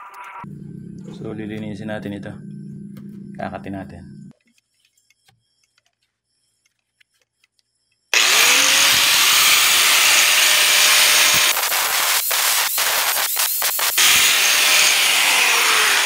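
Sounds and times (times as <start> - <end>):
angle grinder motor whine: 8.1 - 16.0
grinding disc hissing: 8.2 - 16.0.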